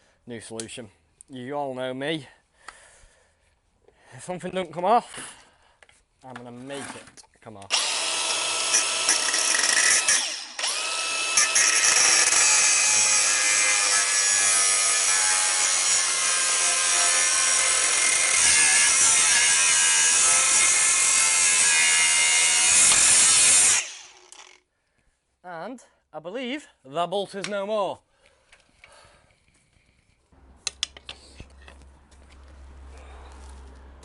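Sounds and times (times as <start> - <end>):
angle grinder cutting metal: 7.7 - 24.6.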